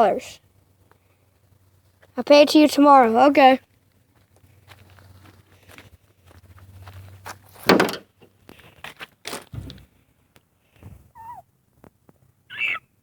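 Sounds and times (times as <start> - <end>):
knocks and thumps: 7.6 - 8.1, 9.5 - 9.9.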